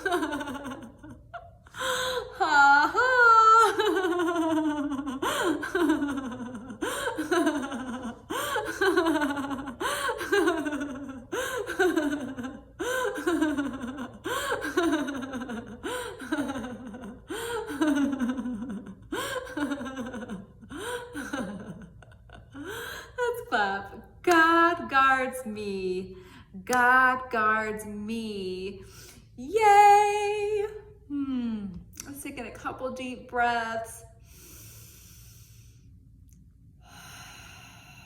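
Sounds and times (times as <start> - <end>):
woman laughing heartily: 0.0 - 23.4.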